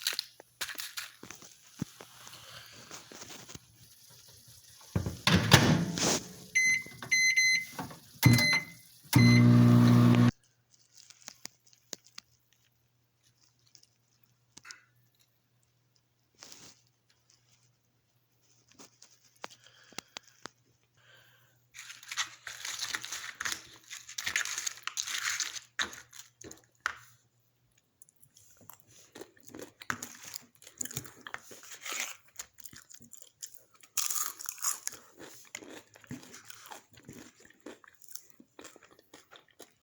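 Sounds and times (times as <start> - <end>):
tortilla chips crunching: 0.0 - 3.6, 10.4 - 17.8, 18.5 - 39.8
microwave oven beeping: 5.0 - 10.3
microwave oven humming: 5.0 - 10.3
faint clicks and crunches: 10.3 - 21.0.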